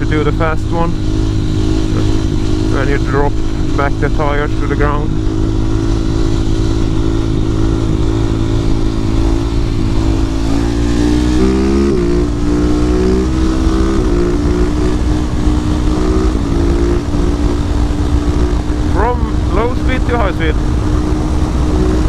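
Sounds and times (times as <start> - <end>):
motorcycle engine running: 0.0 - 22.0
wind noise: 0.0 - 22.0.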